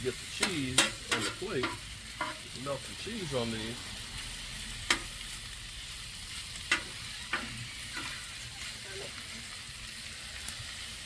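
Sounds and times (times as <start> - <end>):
food sizzling on a grill: 0.0 - 11.0
utensil clicking on grill: 0.3 - 2.5, 4.7 - 5.5, 6.3 - 8.8.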